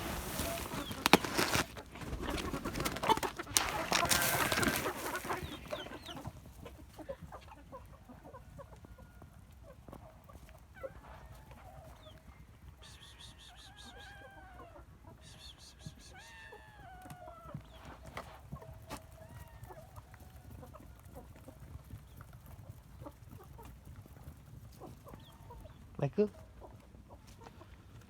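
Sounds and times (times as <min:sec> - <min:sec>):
chickens clucking: 0:00.0 - 0:28.0.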